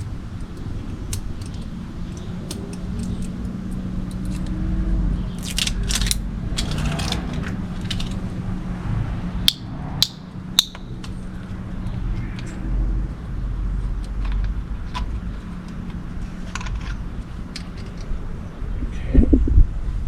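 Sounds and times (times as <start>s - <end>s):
sharp clicks: 0.0s - 4.6s, 9.4s - 18.2s
steady low hum: 0.0s - 20.0s.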